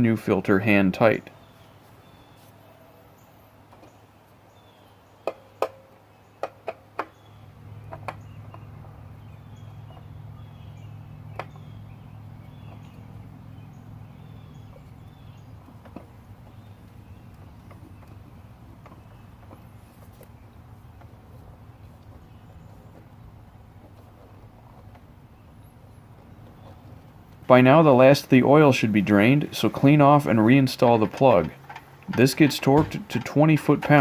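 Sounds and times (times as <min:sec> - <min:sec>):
low steady hum: 0:07.1 - 0:34.0.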